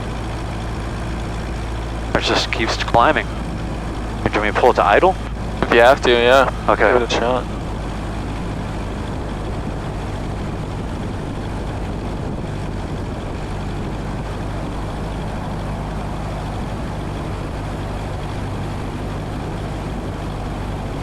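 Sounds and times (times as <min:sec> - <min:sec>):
light aircraft cabin drone: 0:00.0 - 0:21.0
airflow noise: 0:02.2 - 0:08.0.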